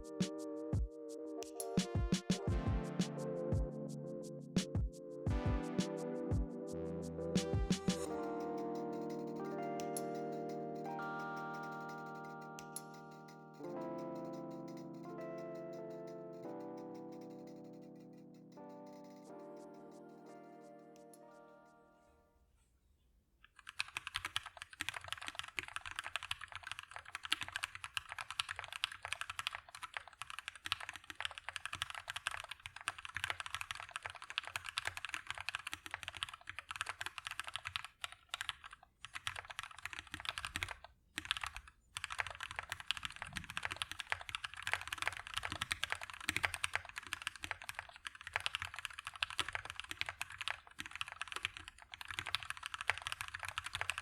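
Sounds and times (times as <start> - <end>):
mechanical keyboard typing: 23.5 - 54.0.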